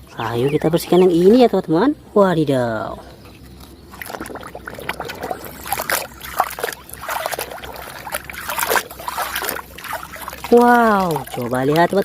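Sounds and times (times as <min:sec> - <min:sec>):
water splashing and trickling: 0:03.3 - 0:12.0.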